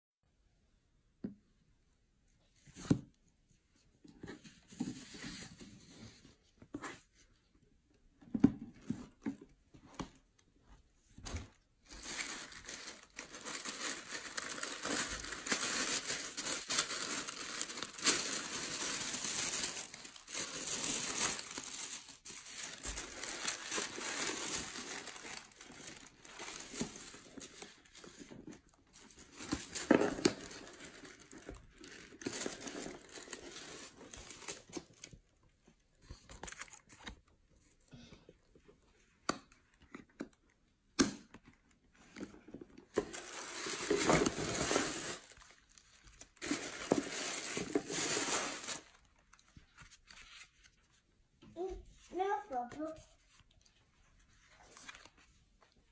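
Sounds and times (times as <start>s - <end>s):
packaging rustling: 11.4s - 35.1s, 42.5s - 50.8s
packaging crinkling and tearing: 11.9s - 28.3s, 28.9s - 35.2s, 36.1s - 37.2s, 43.0s - 50.7s.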